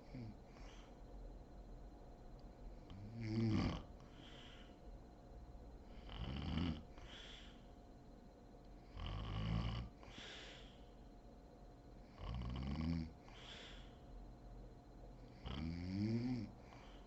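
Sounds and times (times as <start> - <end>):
woman snoring: 3.0 - 3.9, 5.9 - 6.8, 8.9 - 10.7, 12.2 - 13.8, 15.3 - 16.9.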